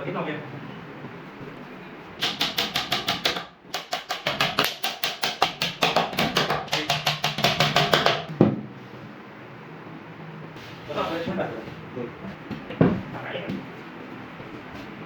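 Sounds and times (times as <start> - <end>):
hammer tapping on wood: 2.2 - 8.3.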